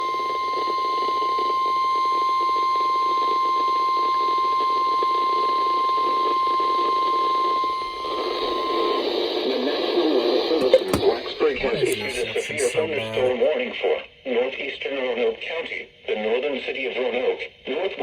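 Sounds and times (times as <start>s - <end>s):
radio hiss: 10.6s - 13.4s.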